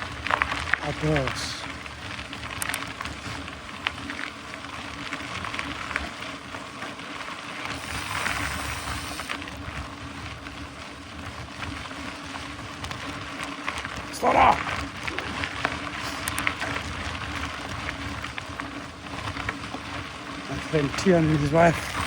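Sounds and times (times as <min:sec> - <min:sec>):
bike tyres rolling on trail: 0:00.0 - 0:22.0
small clicks and knocks: 0:02.4 - 0:03.4
wind rumbling on microphone: 0:07.5 - 0:22.0.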